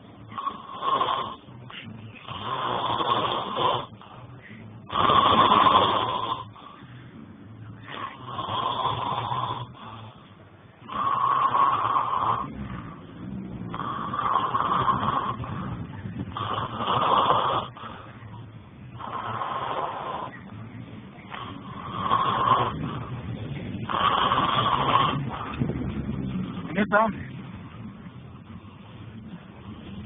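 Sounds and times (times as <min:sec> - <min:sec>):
man snoring loudly: 0:00.3 - 0:01.5, 0:02.2 - 0:04.2, 0:04.8 - 0:06.7, 0:07.8 - 0:10.2, 0:10.8 - 0:18.3, 0:19.0 - 0:20.5, 0:21.3 - 0:25.6
breathing: 0:06.5 - 0:07.2.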